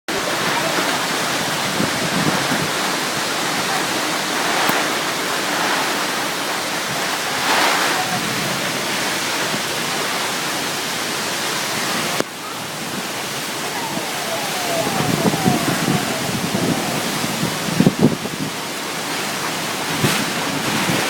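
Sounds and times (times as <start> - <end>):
windstorm rushing: 0.1 - 21.0.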